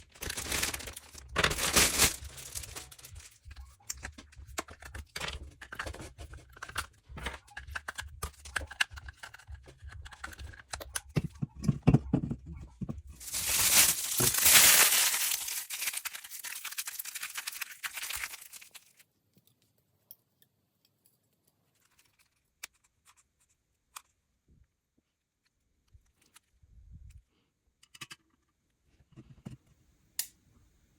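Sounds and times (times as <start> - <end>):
hands rustling materials: 0.0 - 10.7, 13.1 - 19.0.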